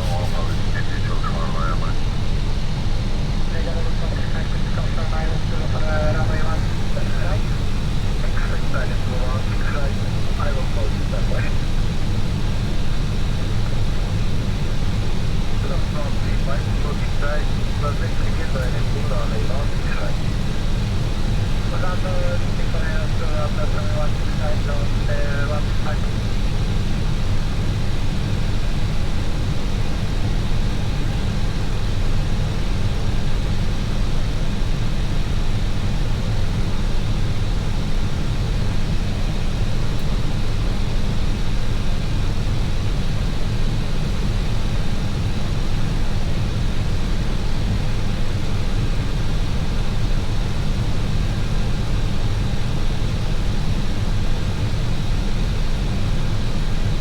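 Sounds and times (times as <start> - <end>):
faint high whine: 0.0 - 46.8
cockpit engine rumble: 0.0 - 57.0.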